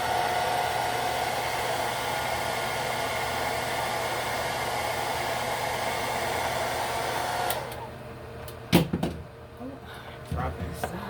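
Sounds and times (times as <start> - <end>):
hair dryer blowing: 0.0 - 8.0
hair dryer switch click: 7.4 - 7.8.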